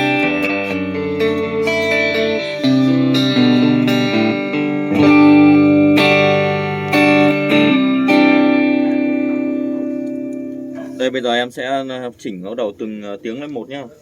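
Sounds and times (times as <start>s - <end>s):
clean electric guitar picking chords: 0.0s - 11.2s.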